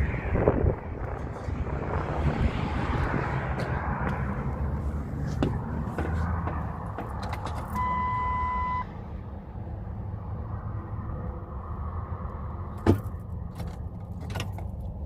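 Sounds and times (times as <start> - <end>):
low rumble: 0.0 - 6.0
car beep: 7.6 - 8.9.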